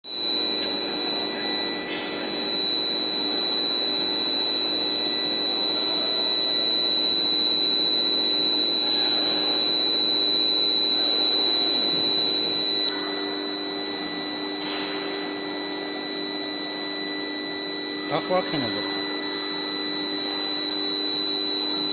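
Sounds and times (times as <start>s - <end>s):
high-pitched furnace whine: 0.0s - 21.9s.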